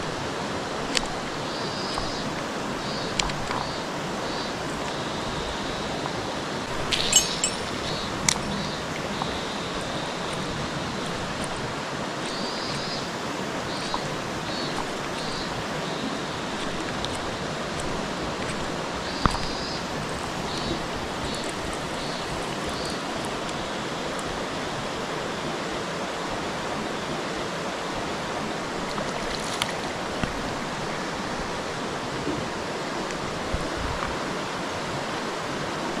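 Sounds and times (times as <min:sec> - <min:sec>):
mountain stream rushing: 0:00.0 - 0:36.0
short high chirps: 0:06.9 - 0:08.7.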